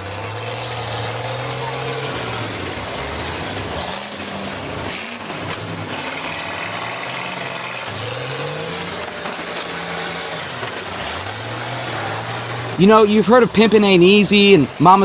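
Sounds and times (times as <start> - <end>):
bus engines revving: 0.0 - 15.0.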